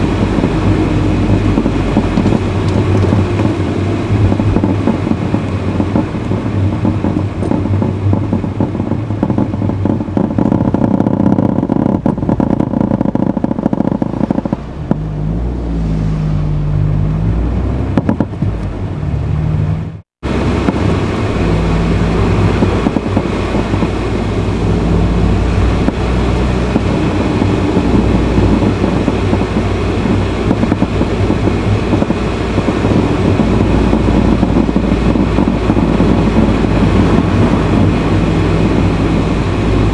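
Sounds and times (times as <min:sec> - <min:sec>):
car running with low hum: 0:00.0 - 0:39.9
low tone shifting pitch: 0:08.9 - 0:30.2, 0:31.1 - 0:39.9.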